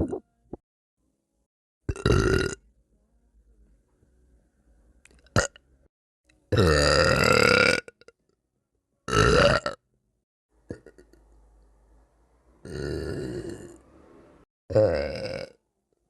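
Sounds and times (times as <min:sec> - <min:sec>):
woman burping: 0:10.7 - 0:11.1.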